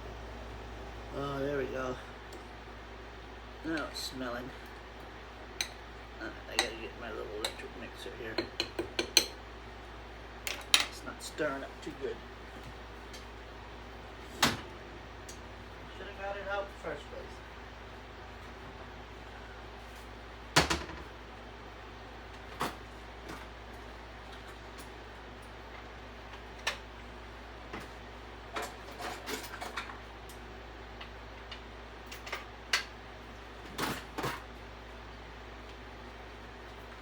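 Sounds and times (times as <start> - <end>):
low steady hum: 0.0 - 22.2
kitchen things clicking and knocking: 8.3 - 9.4.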